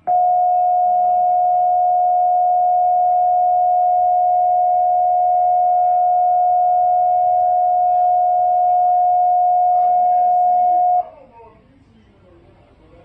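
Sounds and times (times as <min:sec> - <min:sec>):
two-tone alarm: 0:00.0 - 0:11.1.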